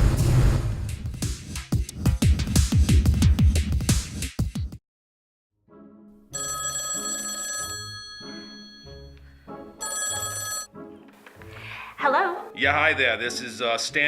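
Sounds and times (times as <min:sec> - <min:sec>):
music: 0:00.0 - 0:04.8, 0:05.6 - 0:14.0
telephone ringing: 0:06.3 - 0:10.7.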